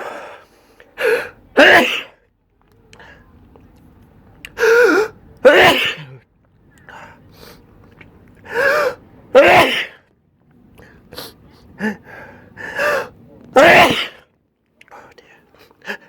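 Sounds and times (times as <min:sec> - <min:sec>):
person sneezing: 0:01.0 - 0:02.2, 0:04.6 - 0:06.2, 0:09.4 - 0:10.0, 0:12.9 - 0:14.2.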